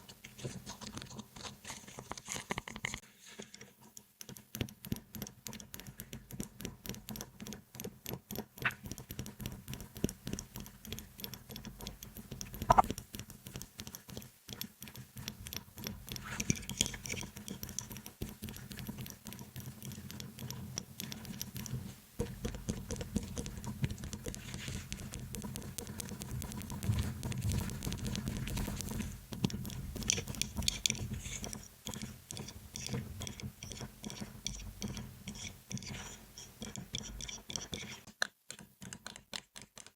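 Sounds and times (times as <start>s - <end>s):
scratching: 12.7s - 12.9s.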